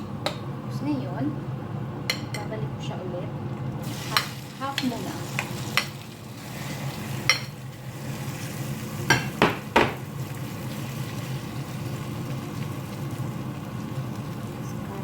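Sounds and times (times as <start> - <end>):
food frying in hot oil: 3.8 - 15.0
metal utensil knocking on pan: 9.1 - 10.0.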